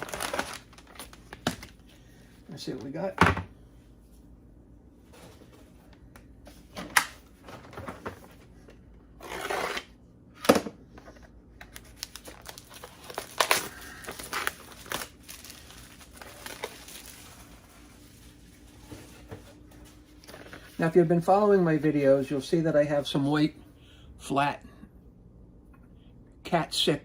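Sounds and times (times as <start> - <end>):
packaging tearing: 0.0 - 1.7, 11.7 - 17.5
packaging crinkling: 0.0 - 1.8, 11.6 - 19.2.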